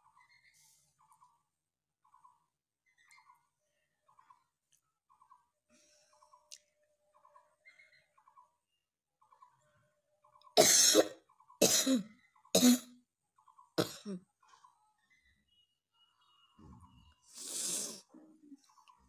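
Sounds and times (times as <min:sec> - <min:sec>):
person coughing: 0:10.6 - 0:12.9, 0:13.8 - 0:14.2.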